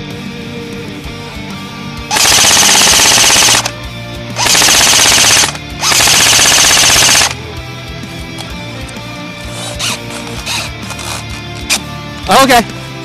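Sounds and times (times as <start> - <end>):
metal music: 0.0 - 12.7
airsoft gun firing bursts: 2.1 - 3.8, 4.4 - 7.4.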